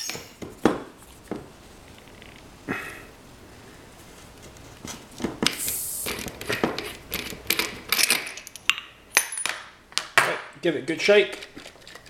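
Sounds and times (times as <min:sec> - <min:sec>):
high gas hiss: 0:05.5 - 0:06.6.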